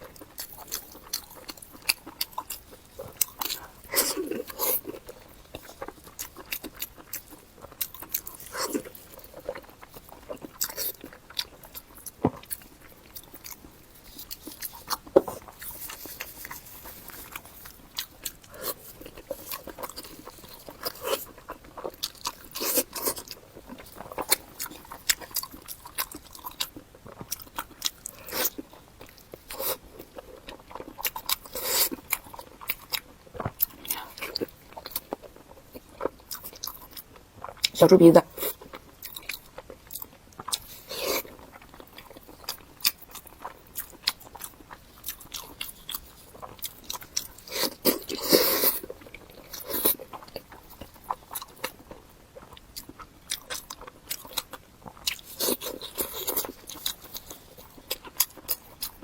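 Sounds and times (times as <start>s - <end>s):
person chewing and crunching: 0.0s - 59.0s.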